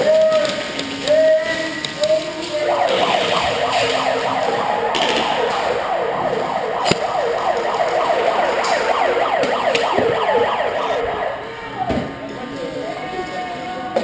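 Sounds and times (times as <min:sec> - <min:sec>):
siren sweeping up and down: 0:02.5 - 0:12.2.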